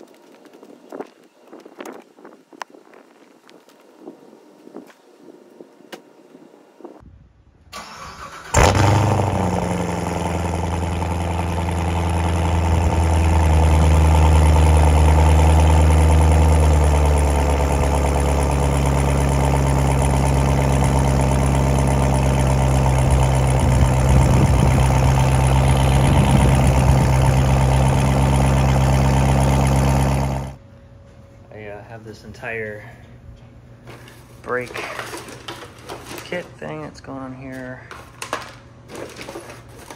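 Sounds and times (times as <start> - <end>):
car engine starting and idling: 7.7 - 30.6
car engine cranking: 7.8 - 30.6.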